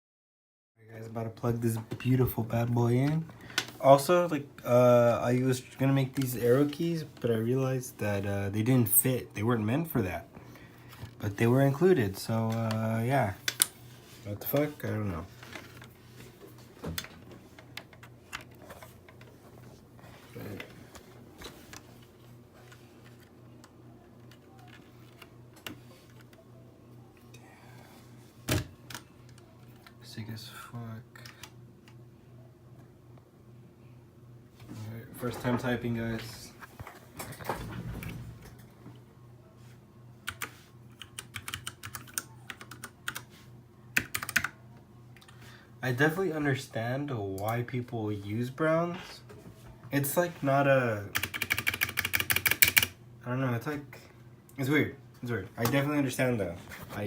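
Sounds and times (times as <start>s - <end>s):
faint low hum: 0.8s - 57.0s
mechanical keyboard clicks: 40.3s - 43.2s, 44.0s - 44.5s, 51.1s - 52.9s.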